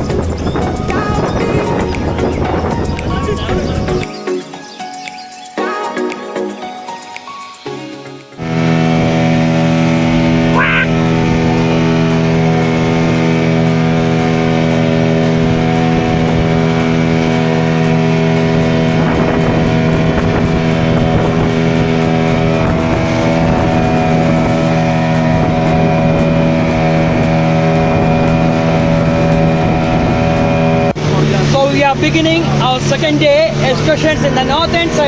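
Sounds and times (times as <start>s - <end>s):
engine droning steadily: 8.4s - 35.0s.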